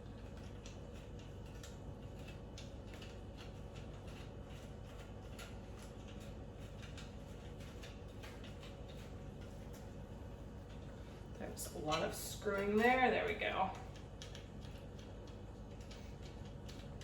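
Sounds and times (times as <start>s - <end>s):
low steady hum: 0.0s - 17.0s.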